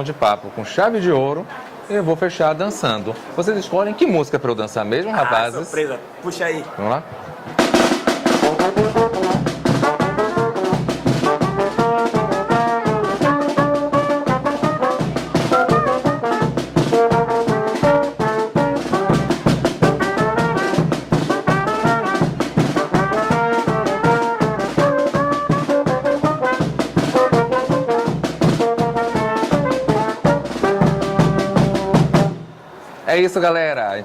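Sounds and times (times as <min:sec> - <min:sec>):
fast drum beat: 0:07.5 - 0:32.4
trumpets and trombones playing: 0:07.6 - 0:32.6.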